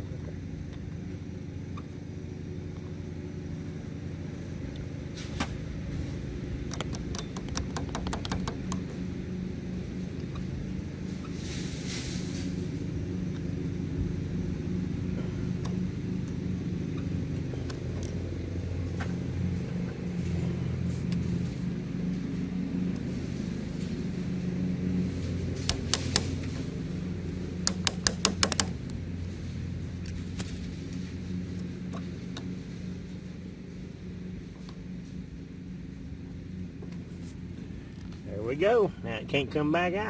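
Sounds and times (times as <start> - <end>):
low machine hum: 0.0 - 40.0
sharp metallic taps: 6.7 - 8.8, 25.6 - 26.6, 27.6 - 28.9.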